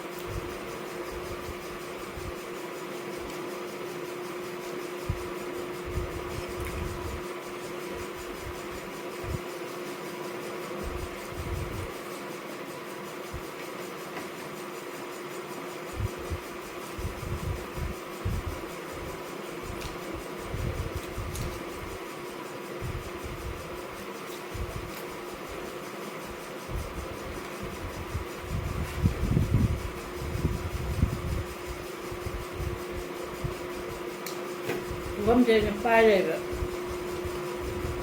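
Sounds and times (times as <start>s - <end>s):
fan hum: 0.0s - 38.0s
soft low thumps: 16.0s - 18.6s, 26.7s - 33.6s.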